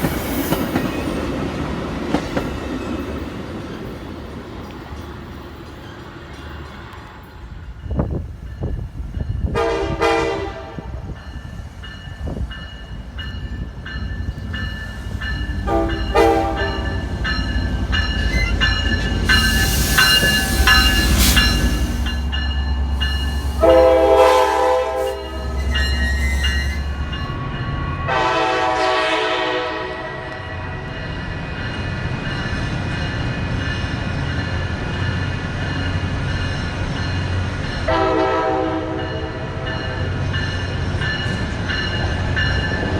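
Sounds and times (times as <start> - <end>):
locomotive rumbling: 0.0 - 27.6
train air horn: 9.5 - 11.0, 15.7 - 17.0, 23.1 - 27.0, 28.1 - 30.5, 37.9 - 39.6
loud rushing hiss: 18.2 - 27.1.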